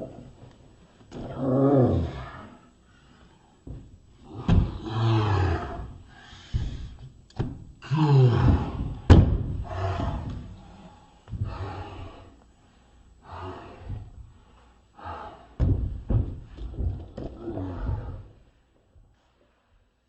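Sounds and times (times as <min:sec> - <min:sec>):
grunts and shouts: 0:04.2 - 0:06.8, 0:07.8 - 0:12.4, 0:16.7 - 0:18.4
body slam: 0:04.4 - 0:04.9, 0:08.4 - 0:10.2, 0:15.6 - 0:17.2.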